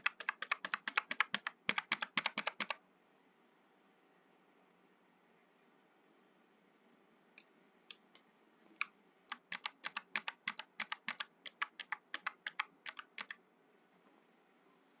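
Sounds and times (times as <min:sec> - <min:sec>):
mechanical keyboard typing: 0:00.0 - 0:02.8, 0:08.8 - 0:13.4.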